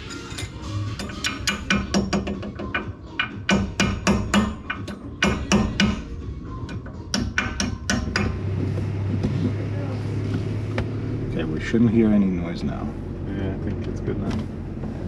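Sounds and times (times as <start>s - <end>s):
hand tools knocking on metal: 1.0s - 6.1s, 6.7s - 8.5s.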